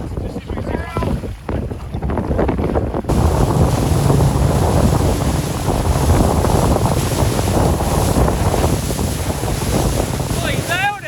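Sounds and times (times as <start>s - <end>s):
wind buffeting microphone: 0.0s - 11.0s
water and waves rushing: 3.1s - 11.0s.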